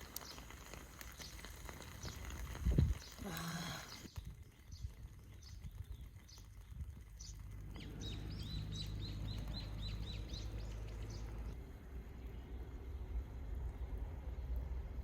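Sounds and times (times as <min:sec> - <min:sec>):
small bird chirping: 0:01.1 - 0:11.6
low steady rumble: 0:07.1 - 0:15.0.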